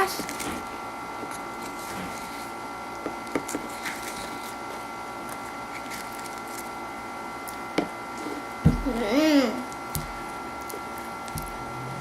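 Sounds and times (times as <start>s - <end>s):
high-pitched background hum: 0.0s - 12.0s
packaging being handled: 5.2s - 6.8s.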